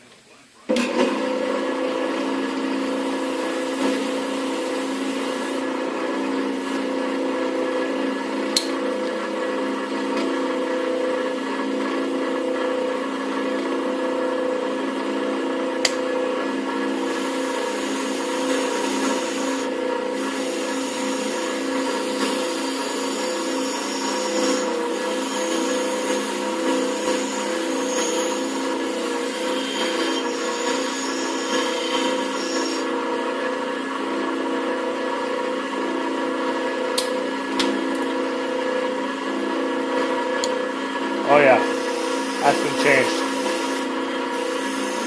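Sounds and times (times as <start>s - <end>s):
power tool motor humming: 16.9s - 32.9s, 41.4s - 45.0s.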